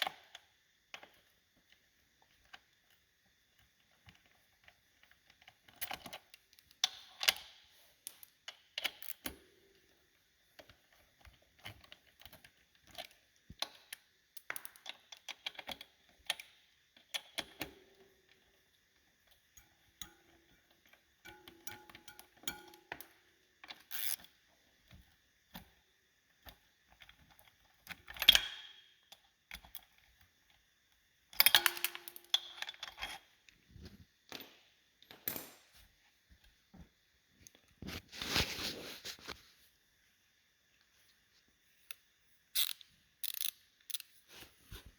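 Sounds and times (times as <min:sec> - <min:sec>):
metallic tool clicks and clinks: 0:21.2 - 0:23.0, 0:31.4 - 0:33.2, 0:35.1 - 0:35.7.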